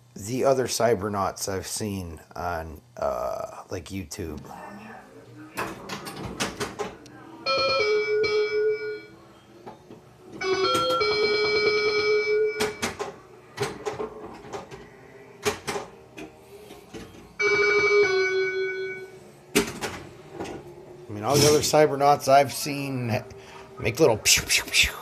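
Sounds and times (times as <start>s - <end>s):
electronic bell-like tones: 7.4s - 9.2s, 10.4s - 12.8s, 17.4s - 19.2s.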